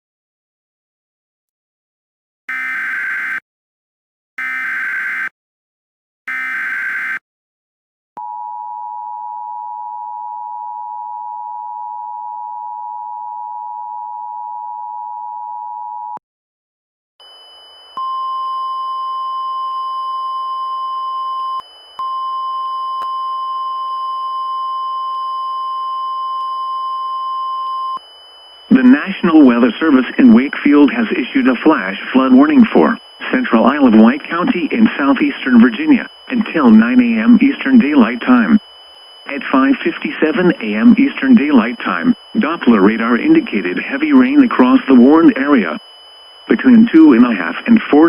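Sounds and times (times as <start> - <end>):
data burst: 28.7 - 45.8, 46.4 - 48.0
radio static: 28.7 - 45.8, 46.4 - 48.0.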